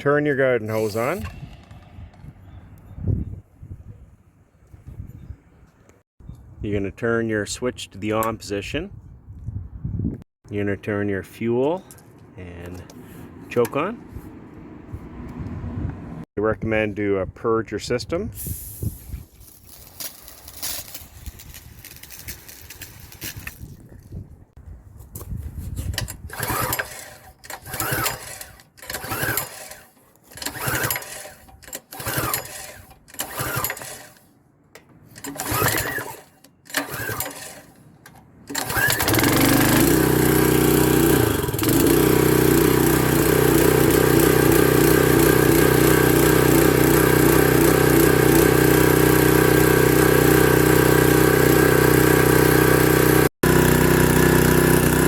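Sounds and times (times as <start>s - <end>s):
small engine running: 0.7s - 1.9s, 26.3s - 34.2s, 35.2s - 37.8s, 38.5s - 55.0s
recoil pull cord pulls: 25.9s - 40.2s.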